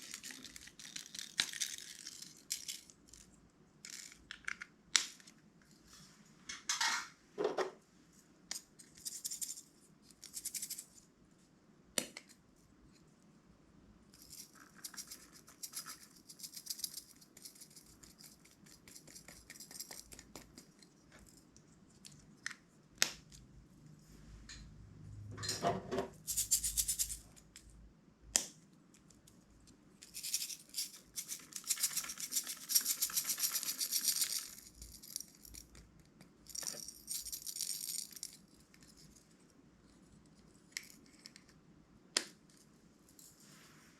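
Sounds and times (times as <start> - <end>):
small loose pieces rattling: 0.0 - 4.3, 14.2 - 20.7, 30.0 - 35.8, 36.4 - 39.2.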